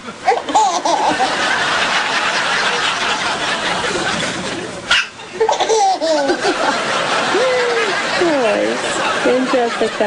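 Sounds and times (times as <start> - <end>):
baby laughing: 0.2 - 1.6, 3.8 - 8.5.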